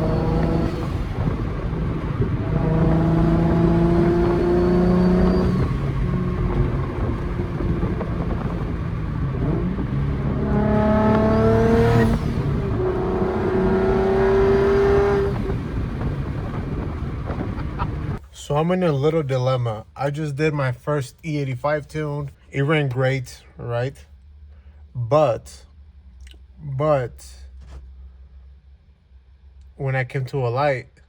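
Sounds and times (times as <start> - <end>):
car engine accelerating hard: 0.0 - 18.2.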